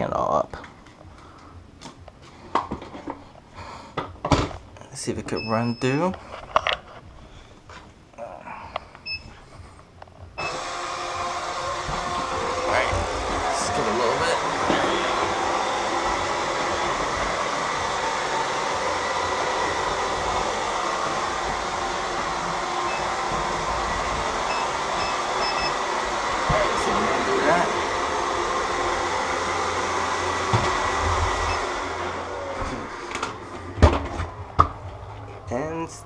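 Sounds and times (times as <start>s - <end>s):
robot vacuum whirring: 10.4s - 35.1s.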